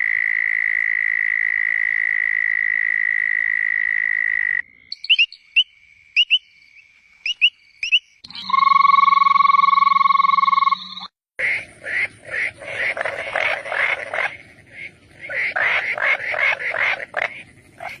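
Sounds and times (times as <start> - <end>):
frog pulsed croaking: 0.0 - 18.0
frog buzzing call: 8.3 - 18.0.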